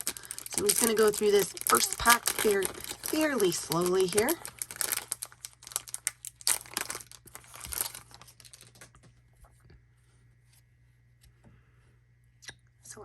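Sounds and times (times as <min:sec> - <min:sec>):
wrapper tearing and crinkling: 0:00.0 - 0:09.0
cards rustling: 0:00.0 - 0:09.2.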